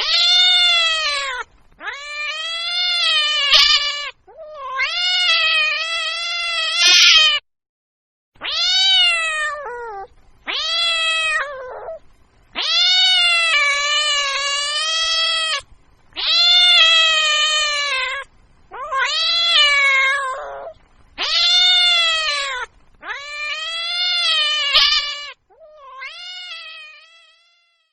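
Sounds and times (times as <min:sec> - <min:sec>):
cat meowing: 0:00.0 - 0:07.4, 0:08.4 - 0:12.0, 0:12.6 - 0:27.9.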